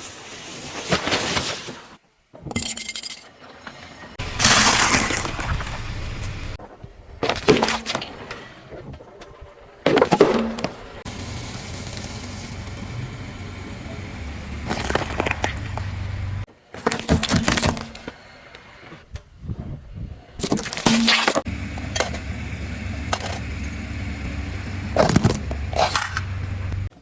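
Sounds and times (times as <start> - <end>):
objects crunching under car tyre: 0.0 - 2.0, 4.2 - 6.6, 14.6 - 17.9
steady low hum: 11.1 - 16.5, 21.5 - 26.9.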